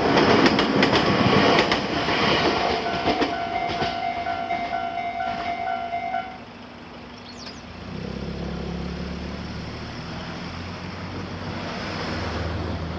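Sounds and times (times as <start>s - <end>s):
level-crossing warning bell: 2.7s - 6.4s
vehicle engine rumble: 3.9s - 12.9s.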